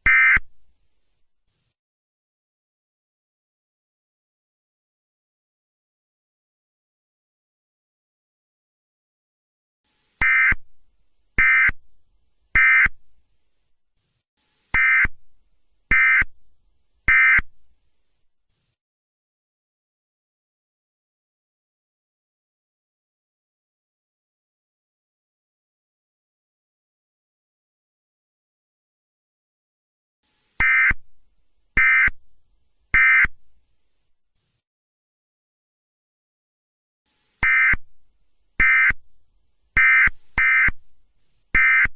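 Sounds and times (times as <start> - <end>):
faint hiss: 0.0 - 1.8, 9.9 - 18.8, 30.2 - 34.6, 37.1 - 41.9
buzzy digital data bursts: 30.3 - 31.1, 37.1 - 37.8, 38.6 - 39.0, 39.8 - 40.8.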